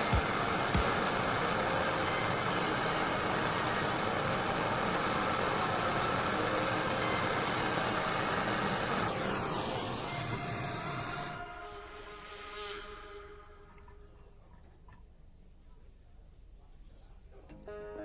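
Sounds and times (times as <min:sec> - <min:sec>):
motor running: 0:00.0 - 0:11.4.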